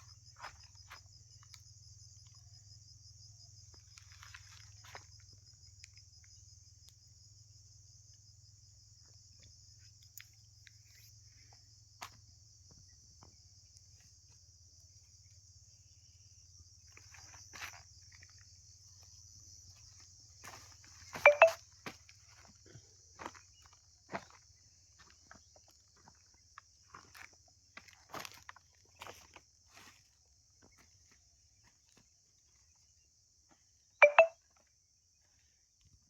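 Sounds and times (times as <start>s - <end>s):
insect trilling: 16.8s - 21.6s.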